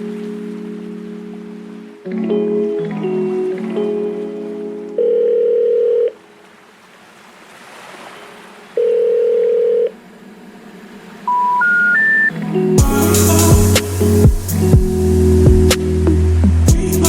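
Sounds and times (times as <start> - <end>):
electronic beeps: 11.3 - 12.4
soft rushing hiss: 12.8 - 16.7.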